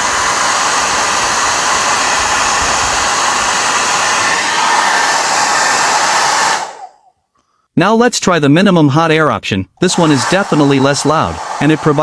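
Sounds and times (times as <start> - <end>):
hair dryer blowing air: 0.0 - 7.1, 9.8 - 12.0.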